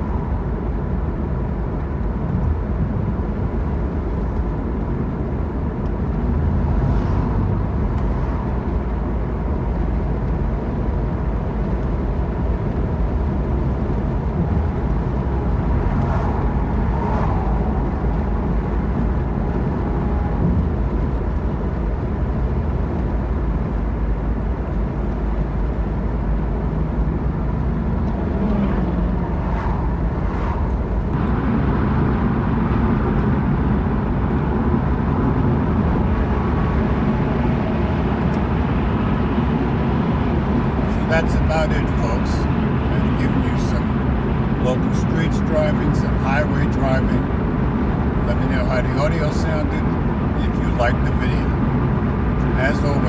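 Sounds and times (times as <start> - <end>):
car road noise rumble: 0.0 - 53.0
air rushing past window: 13.2 - 21.2, 28.2 - 32.7.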